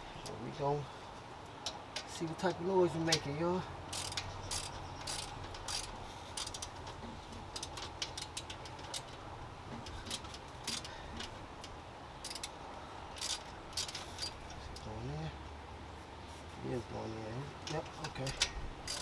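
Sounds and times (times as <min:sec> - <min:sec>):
ratchet wrench clicking: 0:03.9 - 0:06.8, 0:07.4 - 0:09.2, 0:10.0 - 0:14.6, 0:18.0 - 0:19.0.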